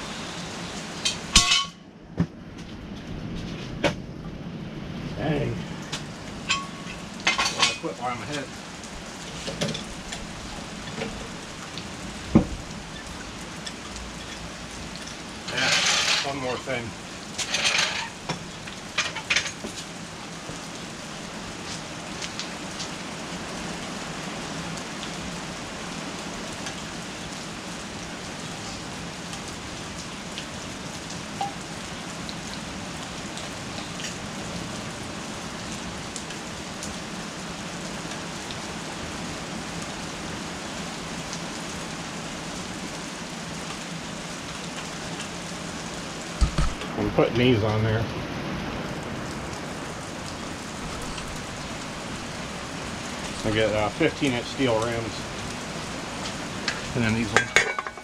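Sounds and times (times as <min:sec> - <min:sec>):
steady hiss: 0:00.0 - 0:01.7, 0:04.4 - 0:19.1, 0:43.9 - 0:58.0.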